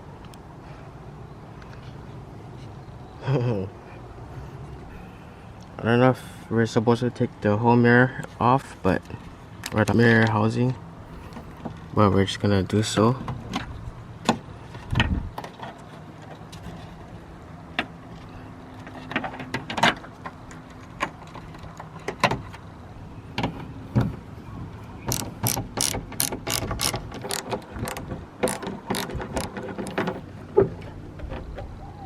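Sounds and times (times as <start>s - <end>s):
hand ratchet clicking: 25.1s - 30.0s
knocks and clicks of tools: 25.1s - 31.6s.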